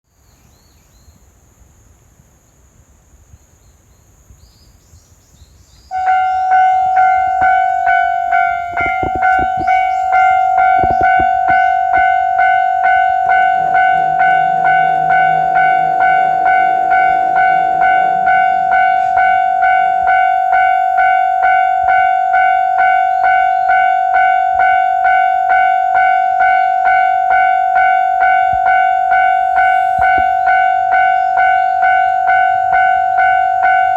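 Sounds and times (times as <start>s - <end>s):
diesel engine hum: 5.9s - 33.9s
level crossing bell ringing: 6.0s - 33.9s
knocks: 7.0s - 12.7s.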